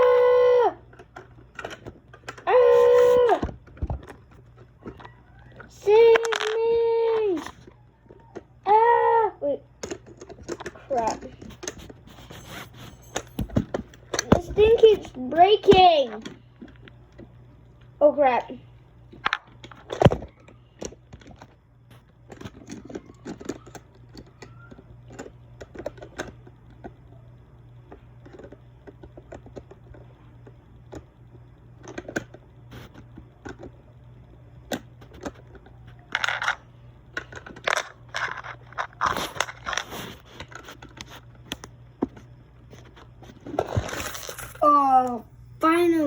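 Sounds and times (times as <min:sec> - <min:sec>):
plastic bricks clicking: 0:04.8 - 0:08.4, 0:22.2 - 0:27.0, 0:34.7 - 0:41.1
small scrapes: 0:10.7 - 0:13.2.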